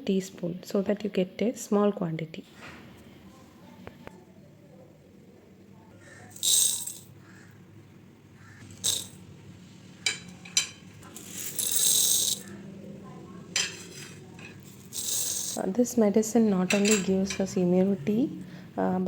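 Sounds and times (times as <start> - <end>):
kitchenware clinking and rattling: 6.2 - 7.2, 8.6 - 9.3, 9.9 - 12.6, 13.5 - 15.8, 16.4 - 17.8.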